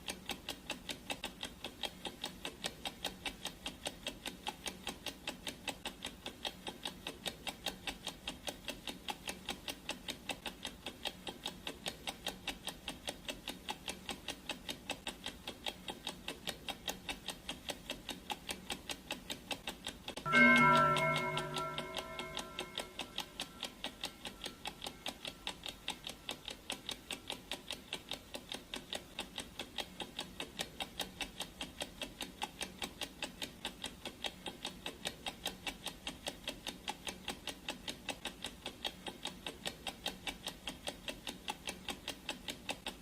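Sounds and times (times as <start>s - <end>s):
clock ticking: 0.0s - 43.0s
gong ringing: 20.3s - 23.7s.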